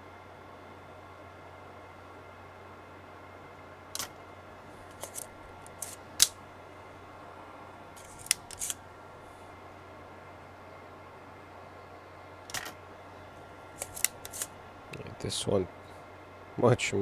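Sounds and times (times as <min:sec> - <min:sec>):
desoldering pump clicks and snaps: 0:04.0 - 0:04.2, 0:04.8 - 0:06.4, 0:08.0 - 0:08.8, 0:12.5 - 0:12.8, 0:13.8 - 0:15.0.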